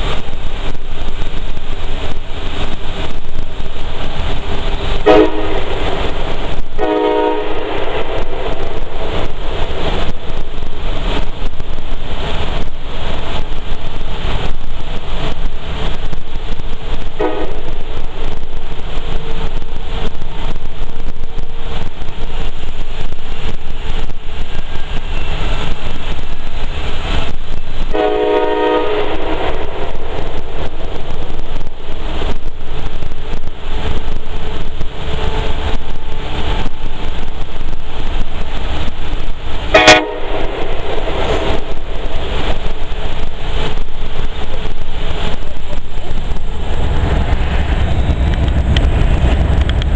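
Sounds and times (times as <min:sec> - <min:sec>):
rumble of truck and traffic: 0:00.0 - 0:49.9
train air horn blasts: 0:05.0 - 0:06.2, 0:06.8 - 0:09.0, 0:17.2 - 0:17.9, 0:27.9 - 0:30.7, 0:39.7 - 0:41.8.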